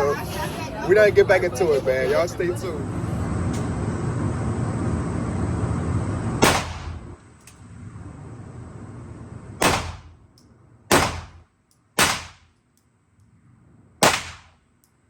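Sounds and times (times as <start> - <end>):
gunshots: 6.4 - 7.0, 9.6 - 10.2, 10.9 - 12.5, 14.0 - 14.6.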